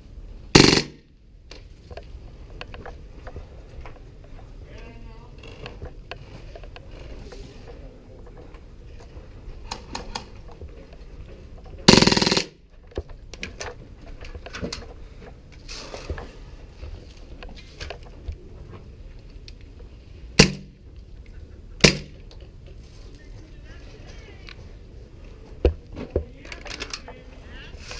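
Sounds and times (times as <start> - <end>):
airsoft gunfire: 0.6 - 1.1, 11.9 - 12.6, 20.4 - 20.7, 21.8 - 22.2.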